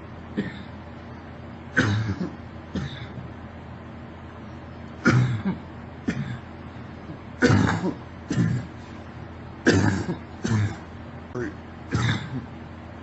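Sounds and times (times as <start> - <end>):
girl coughing: 5.0 - 6.4, 7.4 - 8.7, 9.7 - 10.9, 11.9 - 12.5.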